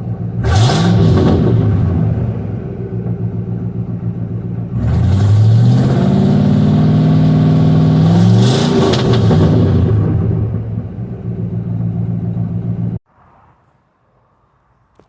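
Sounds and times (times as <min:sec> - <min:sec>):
engine idling and revving: 0:00.0 - 0:13.0
exhaust crackle: 0:00.0 - 0:13.0.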